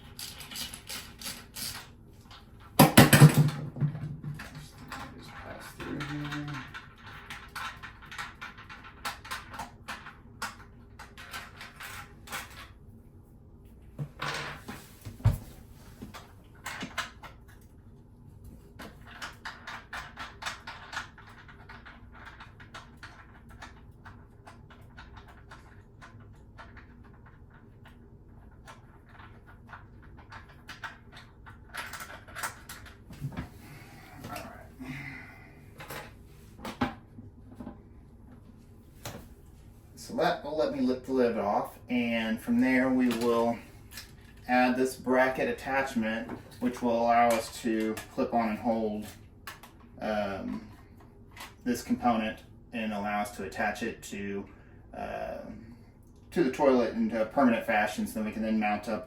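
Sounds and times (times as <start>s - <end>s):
screwdriver clicking and scraping: 0.0s - 1.9s.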